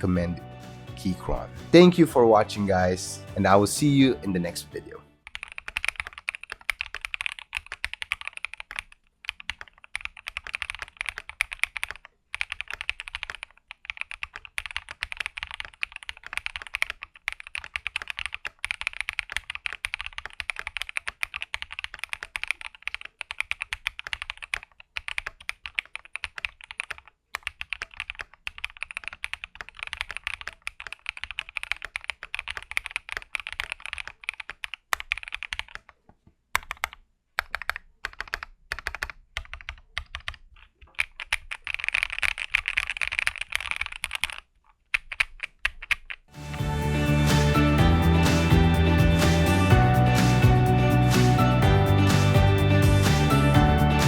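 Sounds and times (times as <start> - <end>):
mechanical keyboard typing: 5.2 - 36.0, 36.6 - 46.3.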